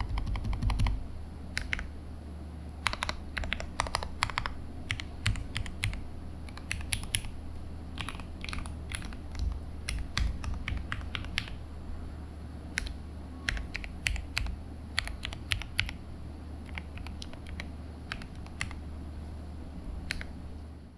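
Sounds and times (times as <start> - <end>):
mechanical keyboard typing: 0.0 - 1.0, 1.6 - 1.9, 2.8 - 7.4, 8.0 - 11.6, 12.7 - 16.0, 16.6 - 18.8, 20.1 - 20.4.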